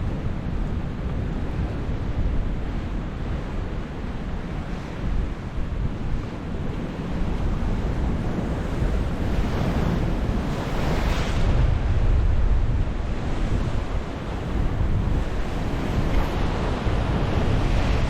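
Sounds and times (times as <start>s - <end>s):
wind rumbling on microphone: 0.0s - 18.0s
sea surf washing: 6.8s - 12.0s, 12.9s - 18.0s
wave breaking: 13.5s - 16.9s.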